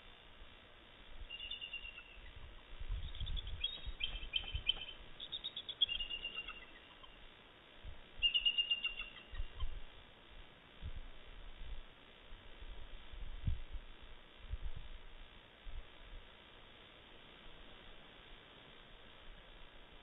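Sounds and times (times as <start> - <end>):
eagles chittering: 1.3 - 7.2, 8.2 - 9.8
wind rumble on microphone: 2.1 - 5.2, 7.8 - 8.3, 9.2 - 10.0, 10.7 - 16.3.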